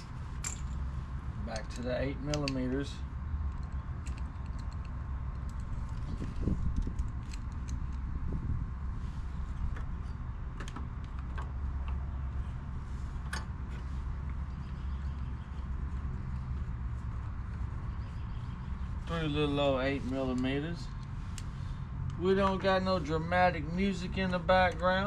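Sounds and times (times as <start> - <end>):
steady low hum: 0.0 - 25.0
metallic clicks of hand tools: 1.6 - 2.6.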